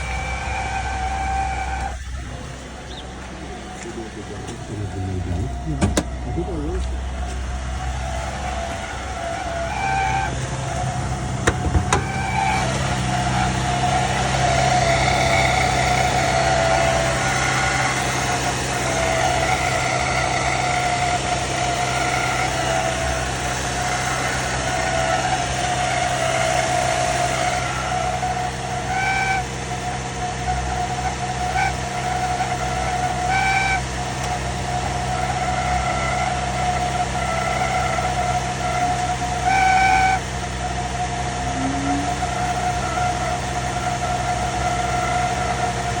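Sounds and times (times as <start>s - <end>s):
car engine idling: 0.0s - 46.0s
high-pitched whine: 41.3s - 43.2s.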